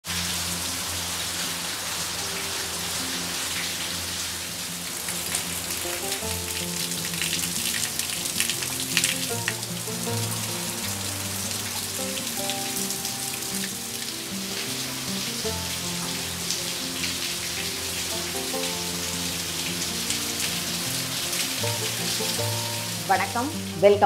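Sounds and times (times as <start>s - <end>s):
heavy rain pattering: 0.0s - 24.0s
slow instrumental music: 0.1s - 24.0s
water drops splashing: 5.1s - 14.6s.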